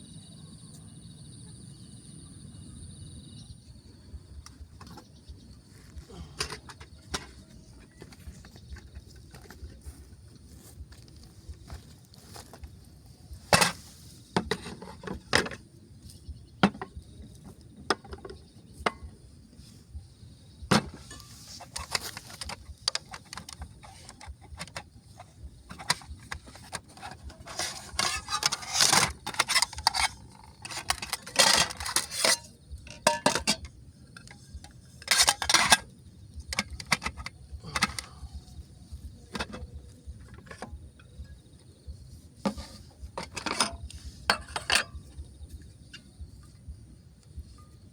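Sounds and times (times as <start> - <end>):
faint insect chirr: 0.0 - 47.9
metal and wood clinking: 5.8 - 11.0, 13.4 - 15.6, 20.7 - 46.5.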